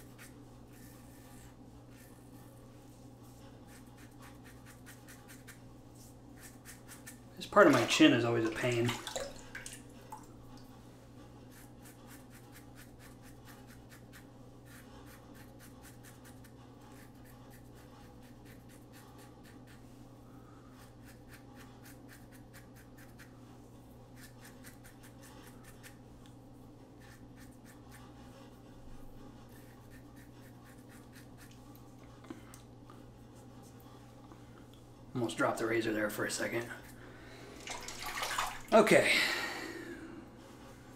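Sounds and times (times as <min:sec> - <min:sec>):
steady low hum: 0:00.0 - 0:40.9
razor rasping on stubble: 0:03.6 - 0:05.6, 0:06.3 - 0:07.2, 0:11.5 - 0:19.8, 0:20.8 - 0:23.4, 0:24.1 - 0:26.0, 0:29.5 - 0:31.6.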